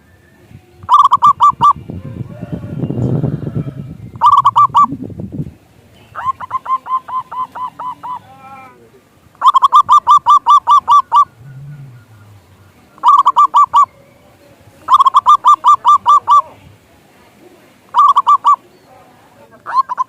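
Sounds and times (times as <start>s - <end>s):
dove cooing: 0.8s - 2.8s, 4.2s - 5.0s, 6.1s - 8.7s, 9.3s - 14.0s, 14.8s - 16.7s, 17.4s - 20.0s.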